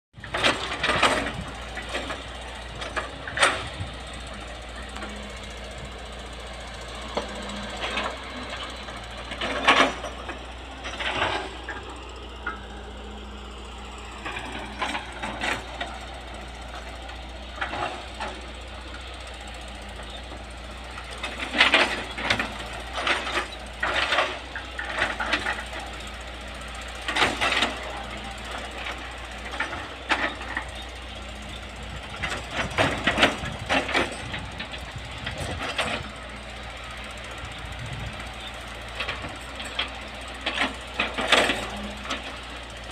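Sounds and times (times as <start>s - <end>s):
excavator engine running: 0.2s - 42.9s.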